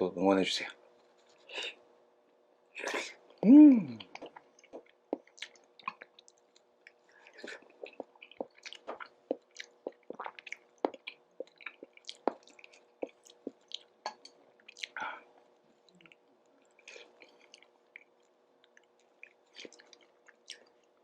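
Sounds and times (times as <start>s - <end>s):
close chewing and mouth sounds: 2.8s - 21.0s.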